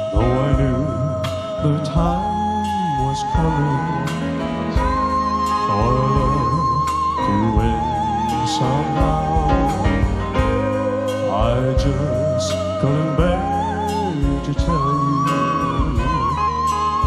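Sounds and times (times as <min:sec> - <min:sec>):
bass: 0:00.0 - 0:17.0
keyboards: 0:00.0 - 0:17.0
sustained melody with vibrato: 0:00.0 - 0:17.0
steady drum hits: 0:03.0 - 0:13.6.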